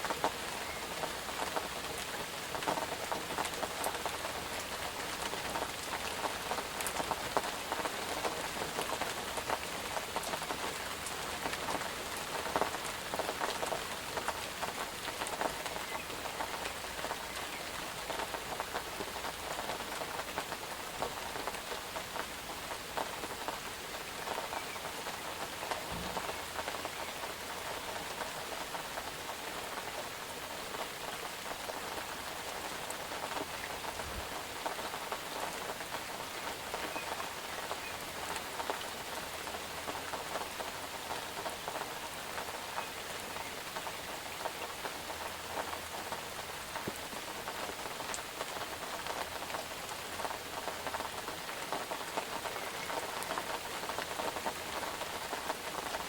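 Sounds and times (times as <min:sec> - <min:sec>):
steady rain: 0:00.0 - 0:56.0
raindrop taps: 0:24.2 - 0:28.3.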